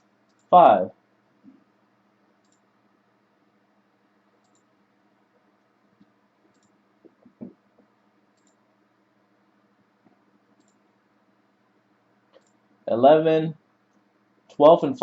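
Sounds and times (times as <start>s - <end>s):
faint computer mouse clicks: 0.2s - 0.5s, 2.4s - 2.6s, 4.4s - 4.7s, 6.0s - 6.8s, 8.3s - 8.6s, 10.6s - 10.8s, 12.3s - 12.6s.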